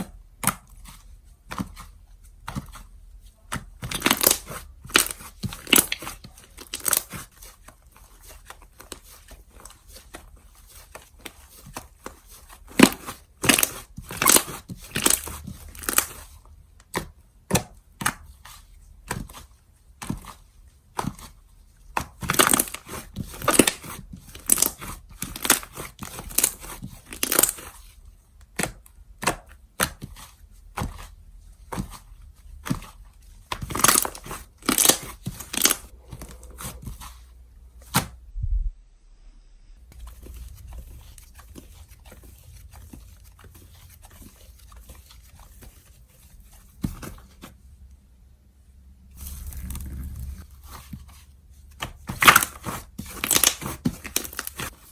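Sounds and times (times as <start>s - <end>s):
slime crackling and popping: 3.9s - 7.3s, 12.8s - 16.2s, 22.0s - 27.7s, 33.5s - 37.0s, 51.8s - 54.7s.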